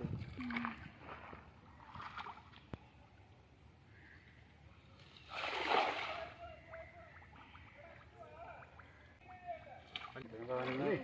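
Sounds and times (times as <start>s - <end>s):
splash in shallow water: 0.0s - 2.6s, 5.2s - 6.4s, 9.8s - 11.0s.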